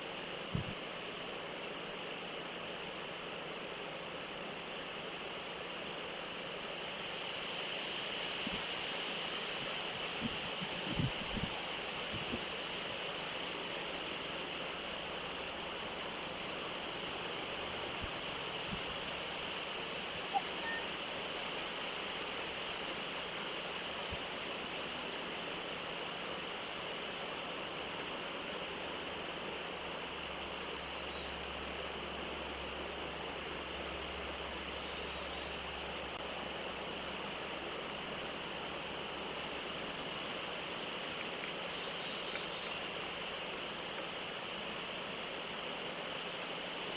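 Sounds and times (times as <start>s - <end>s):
steady outdoor hiss: 0.0s - 46.9s
bird chirping: 20.3s - 20.9s.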